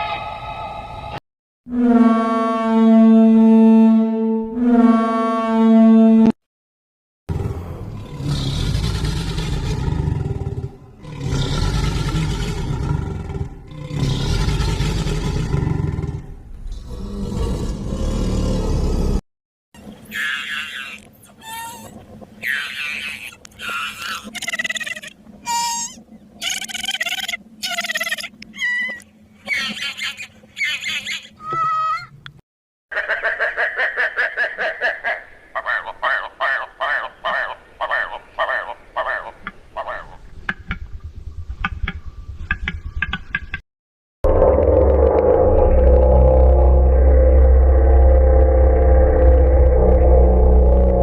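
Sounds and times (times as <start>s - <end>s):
deep rough roaring call: 7.3s - 19.2s, 44.2s - 51.0s
high-pitched animal cries: 20.1s - 32.2s.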